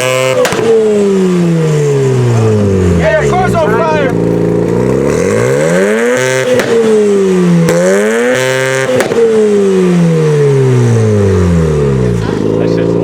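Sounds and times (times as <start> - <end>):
car engine revving: 0.0 - 13.0
sharp exhaust crack: 0.0 - 13.0.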